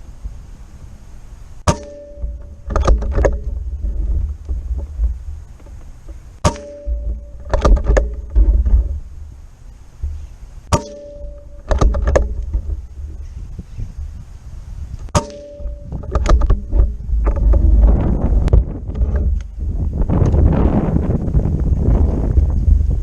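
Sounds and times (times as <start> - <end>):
air rifle shots: 6.4 - 8.1.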